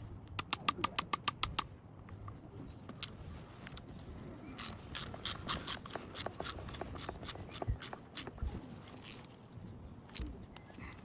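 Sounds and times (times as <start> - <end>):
metal tools clicking and tapping: 0.3 - 1.7, 4.6 - 9.4.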